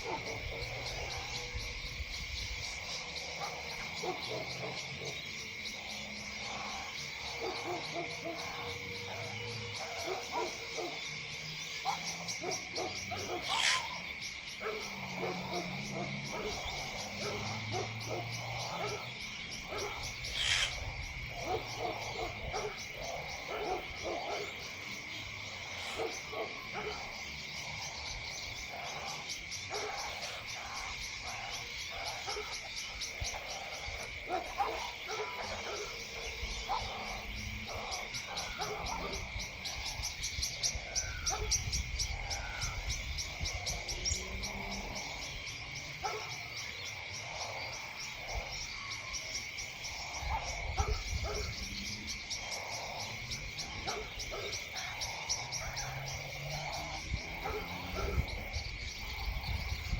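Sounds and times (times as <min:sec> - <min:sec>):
short animal calls: 0:13.4 - 0:14.0, 0:20.3 - 0:20.8.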